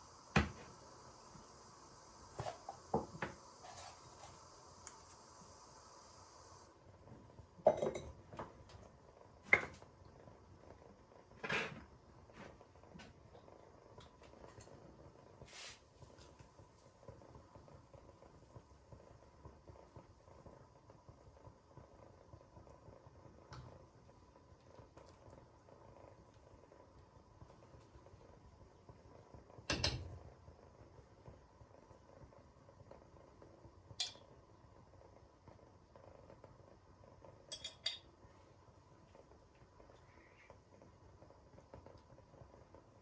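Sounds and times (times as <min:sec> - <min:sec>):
faint steady hum: 0:00.0 - 0:43.0
kitchenware clinking and knocking: 0:07.6 - 0:08.2.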